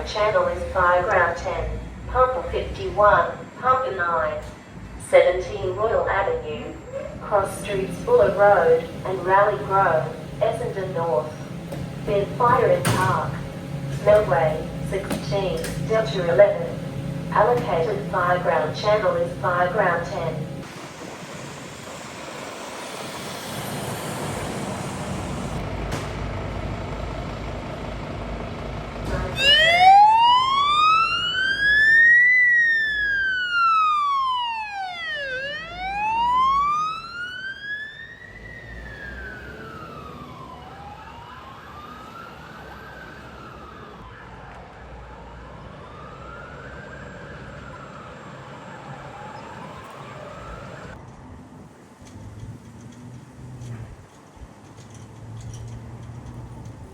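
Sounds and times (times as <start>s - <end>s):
rushing noise: 15.9s - 28.4s
siren wailing: 29.2s - 51.0s.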